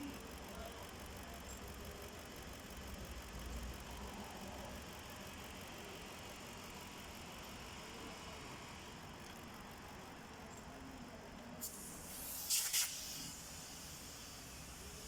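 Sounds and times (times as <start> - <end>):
hissing spray bursts: 11.6 - 14.8.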